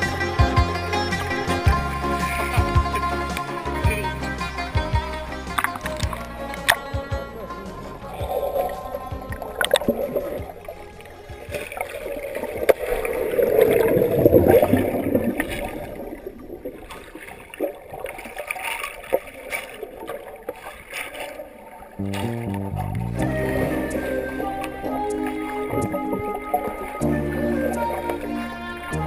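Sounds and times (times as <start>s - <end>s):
music: 0.0s - 12.8s, 22.0s - 29.0s
paddle water splashing: 0.0s - 29.0s.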